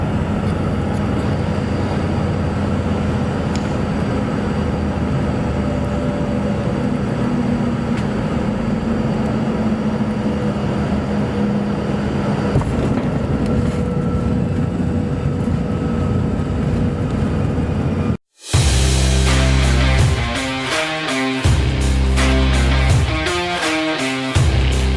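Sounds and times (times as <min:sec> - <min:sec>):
heavy diesel machinery running: 0:18.6 - 0:20.5, 0:21.4 - 0:23.5, 0:24.3 - 0:24.9.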